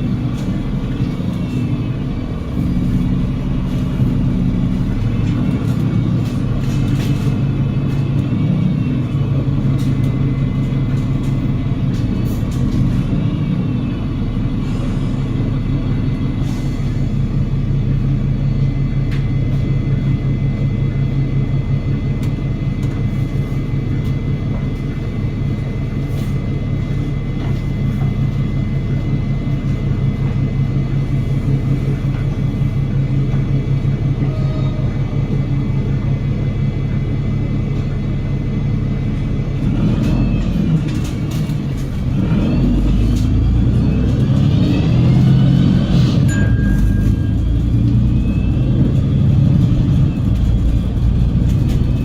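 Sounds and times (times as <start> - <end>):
bus diesel engine drone: 0.0 - 52.0.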